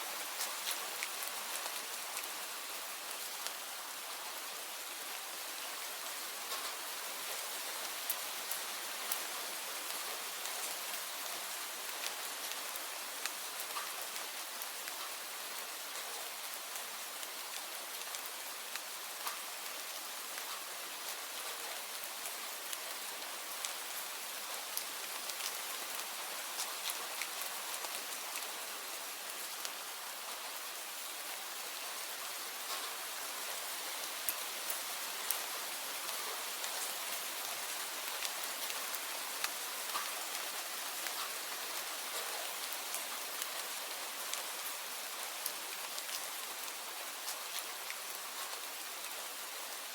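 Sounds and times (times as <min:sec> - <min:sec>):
steady rain falling: 0:00.0 - 0:49.9.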